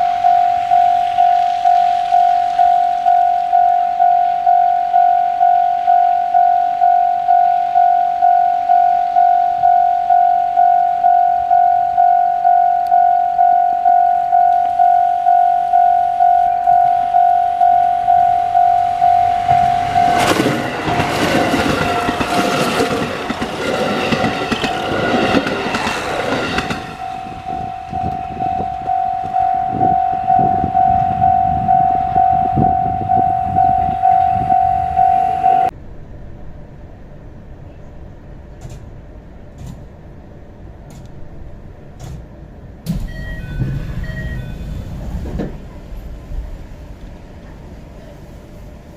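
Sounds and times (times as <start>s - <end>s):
level crossing warning bell: 0.0s - 35.7s, 42.9s - 44.9s
diesel train passing: 0.0s - 48.9s.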